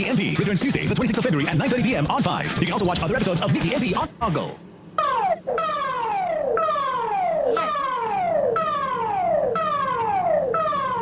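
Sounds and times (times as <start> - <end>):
falling siren tone: 5.0 - 11.0.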